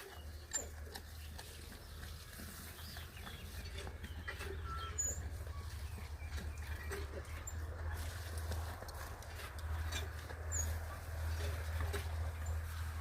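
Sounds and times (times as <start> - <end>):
rustles and clicks: 0.0 - 13.0
bird chirps: 2.8 - 8.1.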